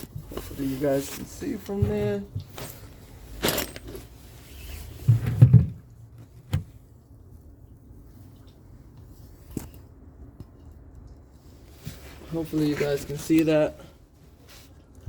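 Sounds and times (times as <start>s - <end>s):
handling noise on microphone: 0.0s - 6.8s.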